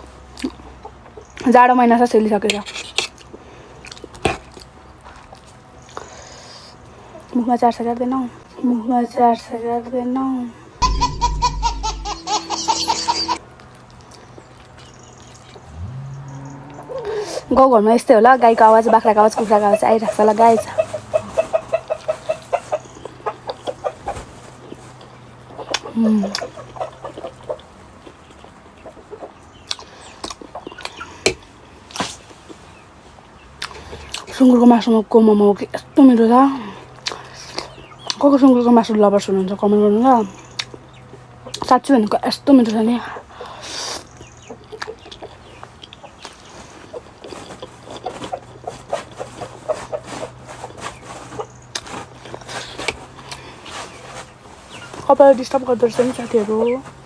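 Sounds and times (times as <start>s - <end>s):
wet chewing clicks and smacks: 3.0s - 6.1s, 29.6s - 32.1s, 37.0s - 38.2s, 40.6s - 40.8s, 44.2s - 46.5s
chickens clucking: 18.4s - 31.2s, 43.0s - 57.0s
sharp clicks from eating: 29.6s - 32.2s, 37.0s - 38.2s.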